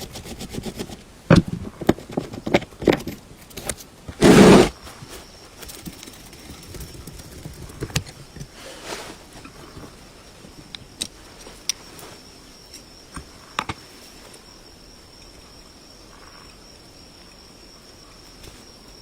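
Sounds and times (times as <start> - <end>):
faint high-pitched whine and hiss: 0.0 - 19.0.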